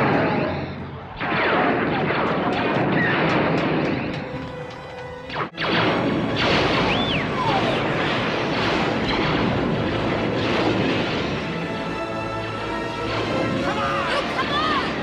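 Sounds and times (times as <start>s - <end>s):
blasts and explosions: 0.0s - 15.0s
whistling laser tone: 6.7s - 7.9s.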